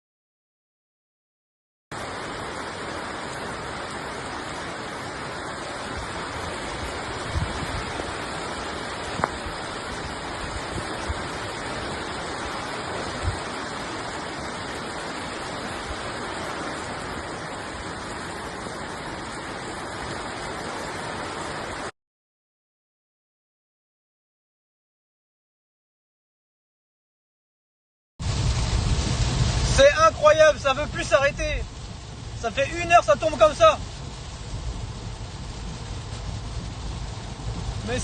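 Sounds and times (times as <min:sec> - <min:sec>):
heavy rain pouring: 0:01.9 - 0:21.9, 0:28.2 - 0:38.0.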